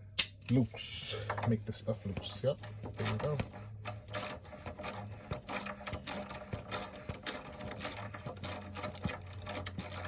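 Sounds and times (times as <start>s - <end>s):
hand ratchet clicking: 2.8s - 10.0s.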